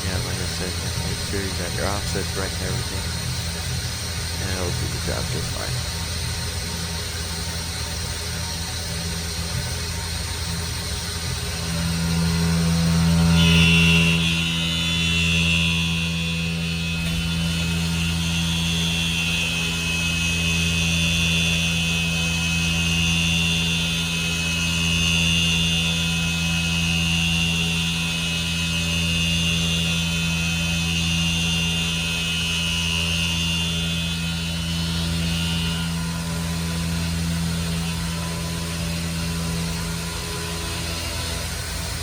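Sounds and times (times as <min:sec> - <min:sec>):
low machine hum: 0:00.0 - 0:42.0
milling machine high whine: 0:00.0 - 0:42.0.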